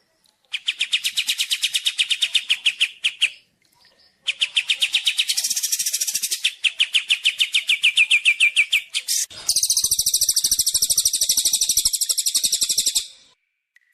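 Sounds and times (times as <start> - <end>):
songbird chirps: 0.0 - 13.9
rough bird trill: 2.8 - 13.3.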